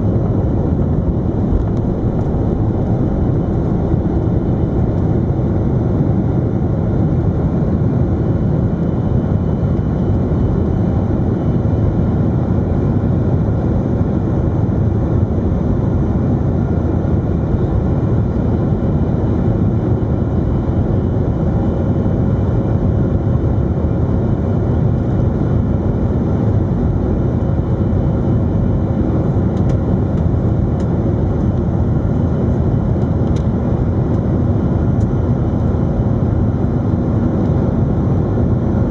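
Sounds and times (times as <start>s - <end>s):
faint steady hum: 0.0s - 7.6s
jet engines low rumble: 0.0s - 38.9s.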